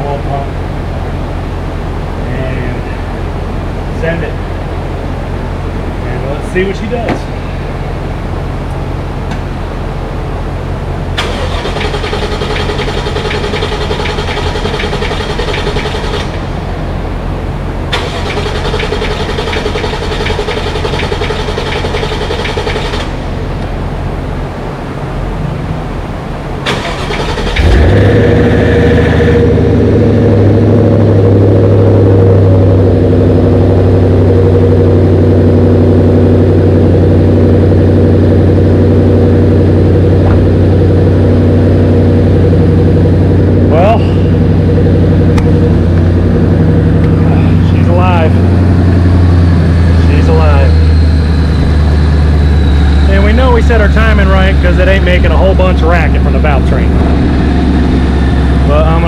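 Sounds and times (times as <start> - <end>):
car engine idling: 0.0 - 59.0
starter motor cranking engine: 11.2 - 16.7, 17.9 - 23.4, 26.6 - 29.6.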